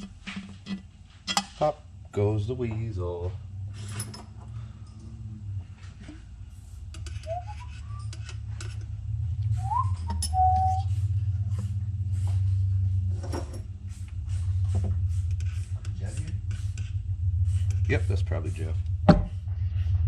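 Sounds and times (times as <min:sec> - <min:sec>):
low steady rumble: 0:00.0 - 0:20.0
whistled notes: 0:07.1 - 0:08.3, 0:09.5 - 0:11.0.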